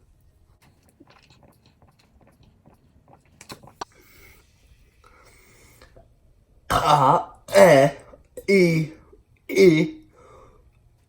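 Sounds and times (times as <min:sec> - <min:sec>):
small mouth clicks: 0:00.6 - 0:03.9
person swallowing: 0:06.7 - 0:10.0.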